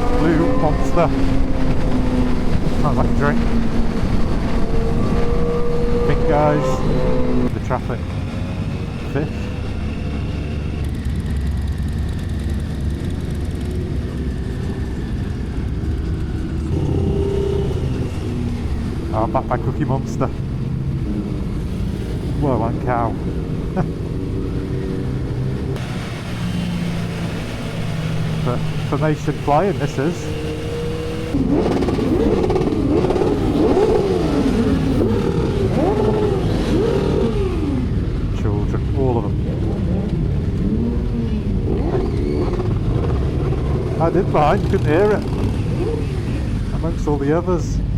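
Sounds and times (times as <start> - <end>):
wind rushing over microphone: 0.0 - 26.3
motorcycle engine running: 0.0 - 38.4
other motorcycles passing: 0.0 - 47.9.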